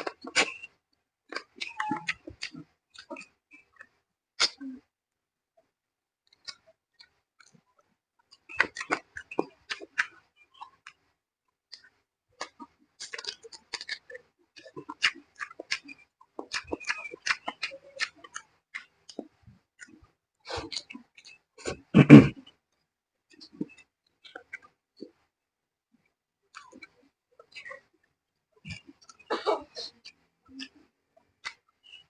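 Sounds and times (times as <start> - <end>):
close chewing: 0.0 - 4.9, 6.2 - 11.1, 11.7 - 22.6, 23.3 - 25.2, 26.5 - 32.0
wet lip-smacking: 1.3 - 4.9, 8.3 - 11.0, 11.7 - 22.4, 28.7 - 32.0.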